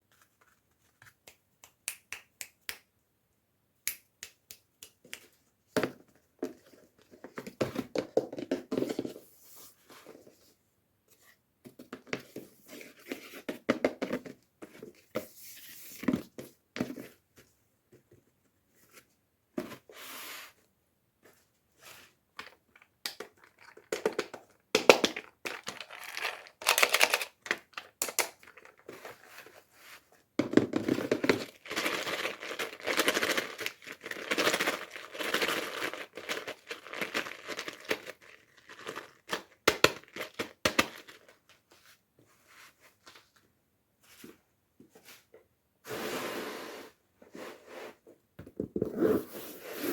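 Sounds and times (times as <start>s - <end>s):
packaging clicks and taps: 22.4s - 28.8s
wrapping crinkling and tearing: 25.2s - 28.9s, 31.3s - 41.4s.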